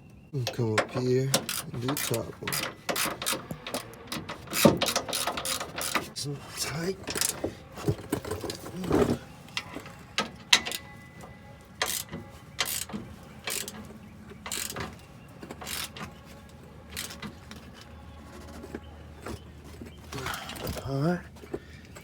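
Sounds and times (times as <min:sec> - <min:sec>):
ratchet wrench clicking: 0:01.3 - 0:06.1, 0:11.8 - 0:13.8, 0:14.4 - 0:14.9, 0:15.6 - 0:16.0, 0:17.0 - 0:17.2.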